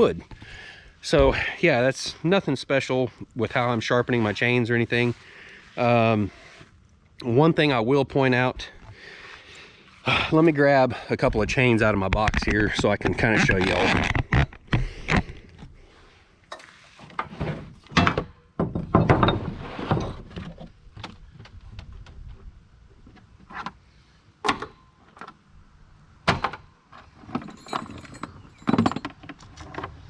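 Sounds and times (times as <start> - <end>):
metal chains clinking and rattling: 27.2 - 29.3.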